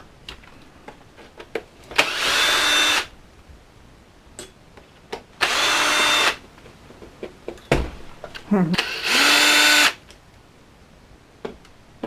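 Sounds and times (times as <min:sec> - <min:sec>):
power screwdriver running: 0:02.0 - 0:03.1, 0:05.4 - 0:06.4, 0:08.8 - 0:10.0.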